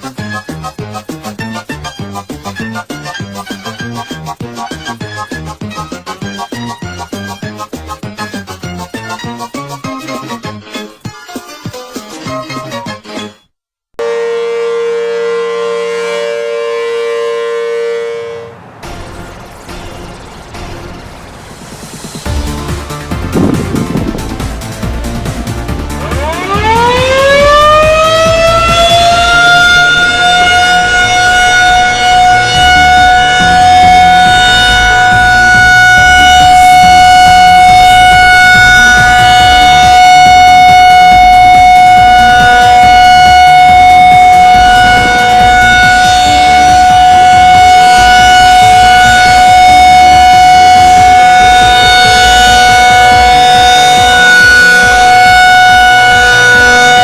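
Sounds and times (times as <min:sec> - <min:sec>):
tornado siren wailing: 0:14.0 - 0:57.0.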